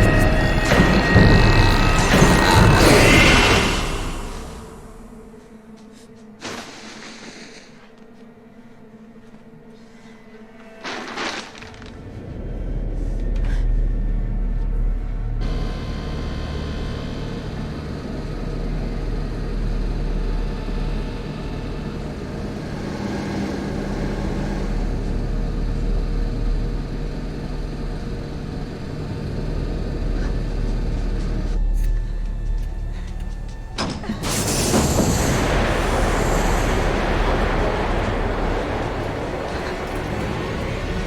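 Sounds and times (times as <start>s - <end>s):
sharp crash-like hit: 0.0s - 5.5s, 33.8s - 41.0s
deep rumble: 0.0s - 5.6s, 12.0s - 41.0s.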